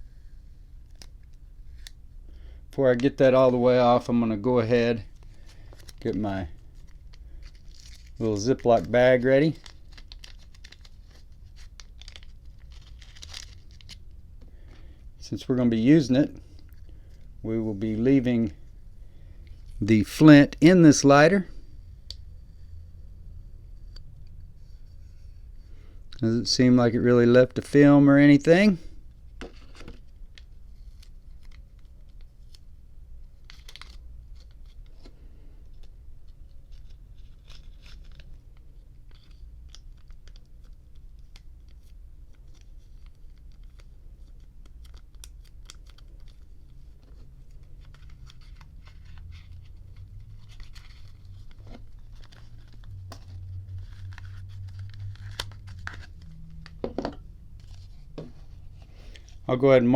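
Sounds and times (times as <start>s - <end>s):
packaging clicks and crinkling rustles: 5.1s - 14.1s, 33.4s - 57.0s.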